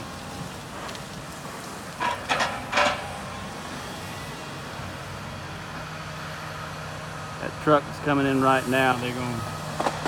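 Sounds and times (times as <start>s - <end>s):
diesel engine running: 0.0s - 10.0s
metal-on-metal clanks: 2.0s - 3.1s.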